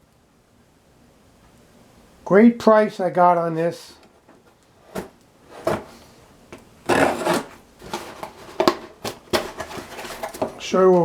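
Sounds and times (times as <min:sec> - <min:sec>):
cardboard box scraping: 0:06.8 - 0:10.5.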